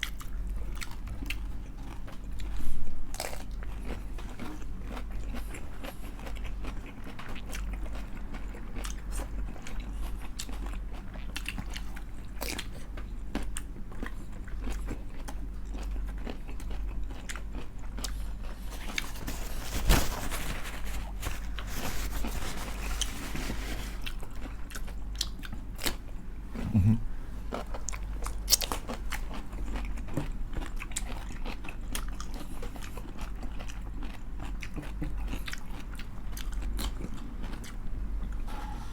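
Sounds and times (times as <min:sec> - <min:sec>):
crunching fried chicken skin: 0:00.0 - 0:26.0
wet chewing: 0:00.0 - 0:26.1.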